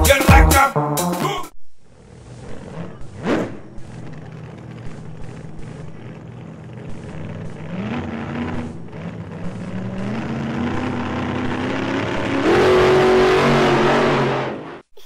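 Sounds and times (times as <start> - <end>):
car engine revving: 1.8 - 14.9.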